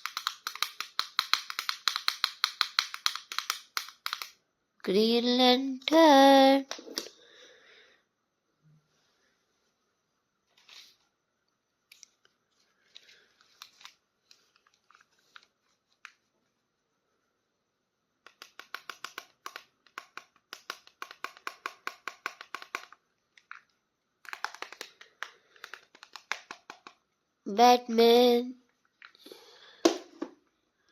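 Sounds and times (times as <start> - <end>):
sharp clicks or snips: 0.0 - 4.4.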